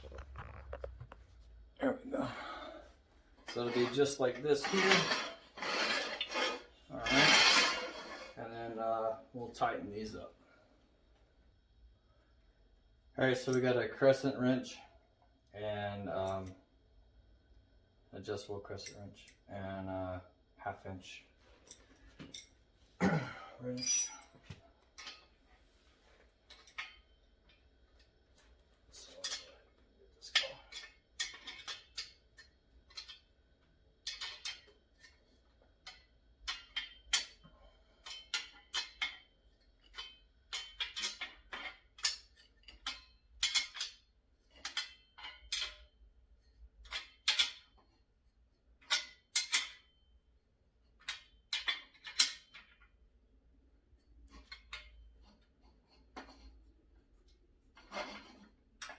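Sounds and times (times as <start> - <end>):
wrenches clinking on steel bolts: 23.7 - 25.3, 26.5 - 27.8, 28.9 - 33.3, 34.0 - 48.0, 48.8 - 50.0, 50.9 - 53.0, 54.3 - 56.5, 57.8 - 58.9.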